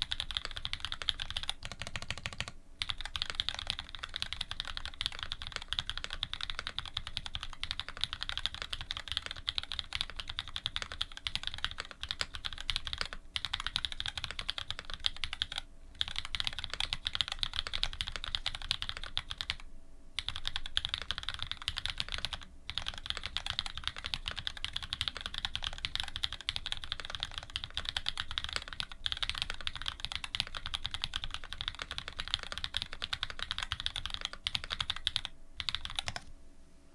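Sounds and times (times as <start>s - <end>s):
fast typing on mechanical keyboard: 0.0s - 19.6s, 20.2s - 36.3s.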